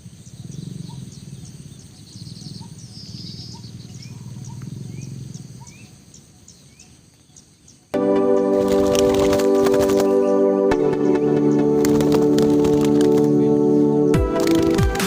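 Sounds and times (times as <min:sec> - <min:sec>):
insects: 0:00.0 - 0:08.0, 0:11.4 - 0:14.8
faint birds chirping: 0:00.0 - 0:14.7
loud music: 0:08.0 - 0:15.0
dove cooing: 0:08.5 - 0:15.0.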